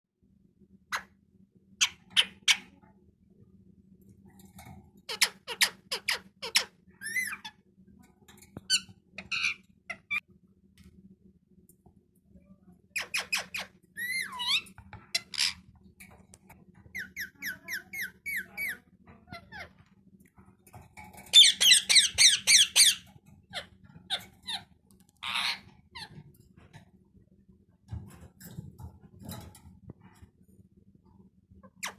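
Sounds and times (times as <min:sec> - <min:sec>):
parrot squeaking and squawking: 0:01.8 - 0:02.7, 0:05.1 - 0:07.6, 0:08.7 - 0:10.2, 0:13.0 - 0:15.6, 0:16.9 - 0:19.9, 0:21.3 - 0:26.2, 0:31.6 - 0:31.9
parrot screeching: 0:05.1 - 0:07.5, 0:13.0 - 0:15.6, 0:21.3 - 0:23.0, 0:23.6 - 0:26.2
parrot chirps: 0:05.1 - 0:07.6, 0:13.0 - 0:15.6, 0:21.3 - 0:26.1.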